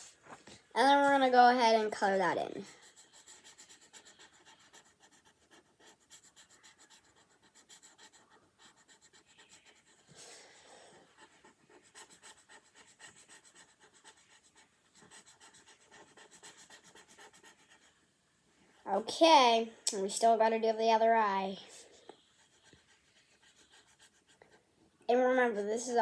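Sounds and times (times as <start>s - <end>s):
marker scratching on paper: 0.8s - 10.4s, 11.0s - 18.0s, 22.0s - 24.5s.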